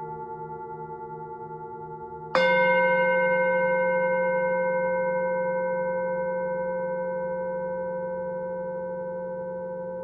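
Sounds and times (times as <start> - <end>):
singing bowl ringing: 0.0 - 10.0.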